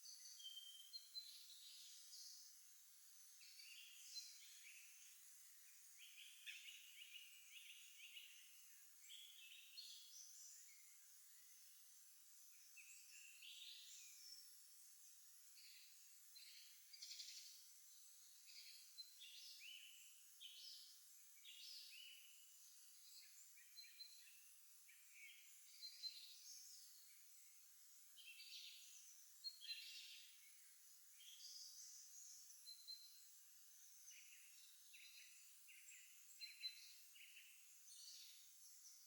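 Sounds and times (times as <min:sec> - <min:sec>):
songbirds chirping and trilling: 0:00.0 - 0:39.0.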